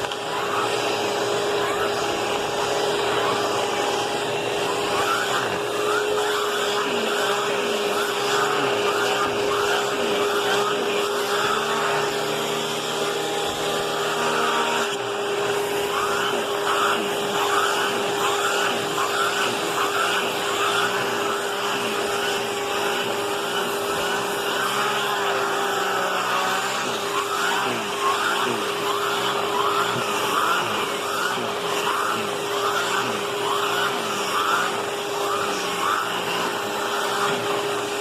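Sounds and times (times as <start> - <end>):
vacuum cleaner running: 0.0 - 38.0.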